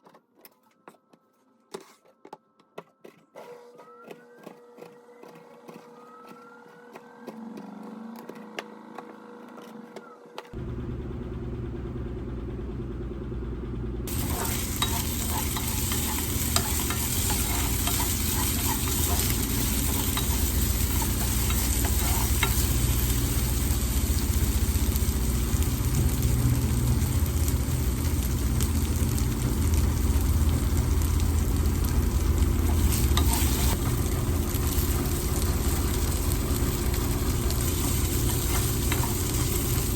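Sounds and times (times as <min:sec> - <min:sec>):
steady low hum: 0:10.6 - 0:39.9
food sizzling in a pan: 0:14.1 - 0:39.9.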